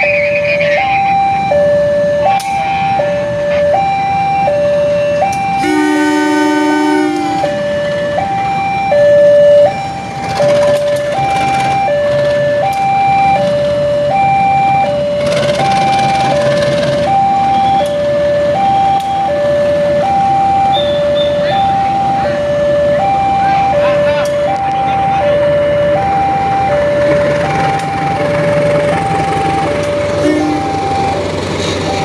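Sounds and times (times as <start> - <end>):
two-tone crossing alarm: 0.0 - 32.0.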